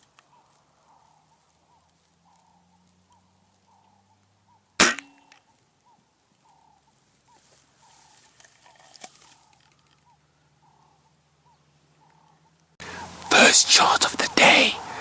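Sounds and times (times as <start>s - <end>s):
bird calling: 0.0s - 15.0s
air rifle shot crack: 4.8s - 5.4s
rustling: 5.2s - 10.1s.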